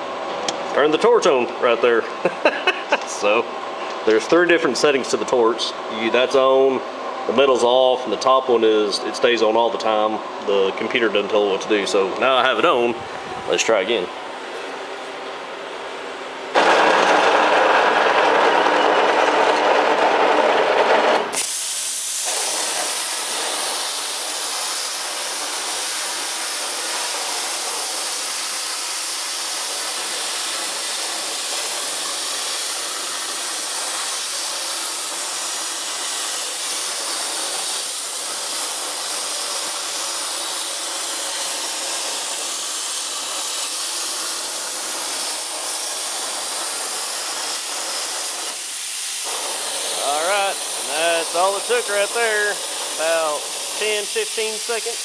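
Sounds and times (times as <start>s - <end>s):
plasma torch cutting sheet metal: 16.5s - 55.0s.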